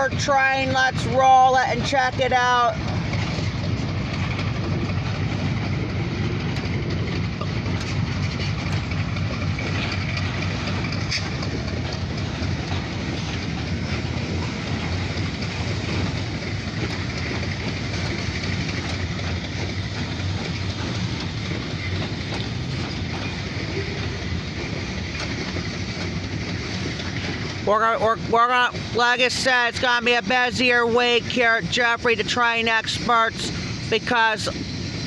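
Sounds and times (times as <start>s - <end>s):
diesel locomotive rumble: 0.0s - 35.0s
faint clicks from rails: 2.8s - 27.7s.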